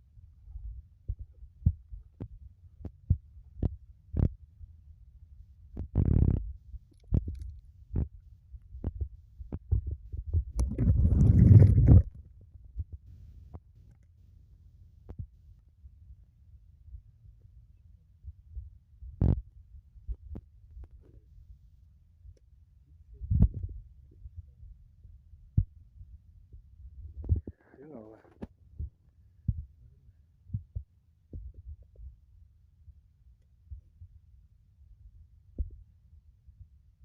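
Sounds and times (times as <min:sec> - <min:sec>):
rubbing noise: 0:10.6 - 0:12.2.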